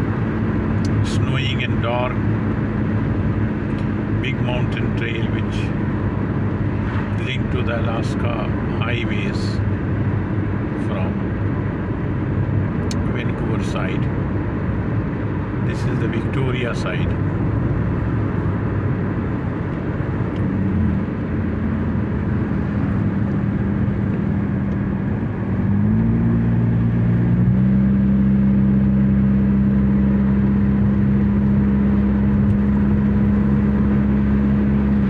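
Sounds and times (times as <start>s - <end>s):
car engine hum: 0.0s - 35.0s
road noise: 0.0s - 35.0s.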